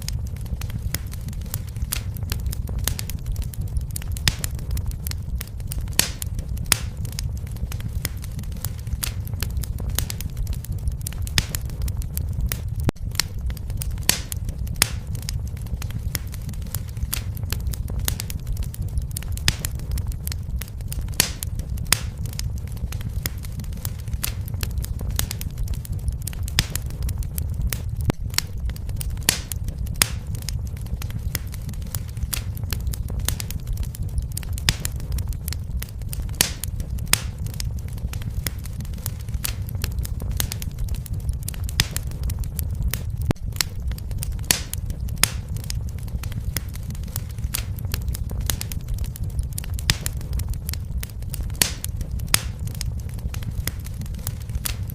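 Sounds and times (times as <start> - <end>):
wood fire crackling: 0.0 - 54.9.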